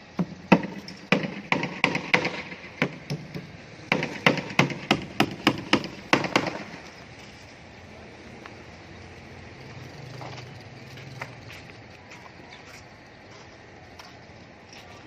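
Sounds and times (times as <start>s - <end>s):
hammer driving nails into wood: 0.2s - 6.9s.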